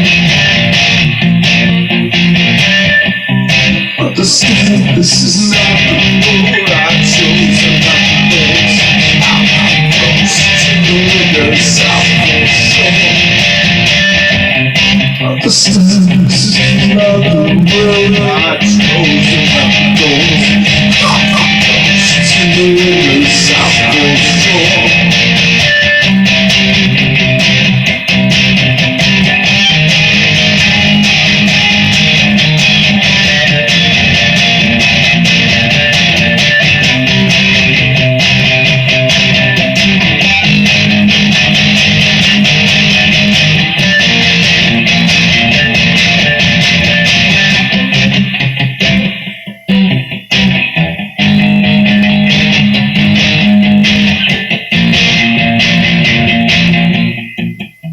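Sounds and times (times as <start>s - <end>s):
electric guitar playing: 0.0s - 57.9s.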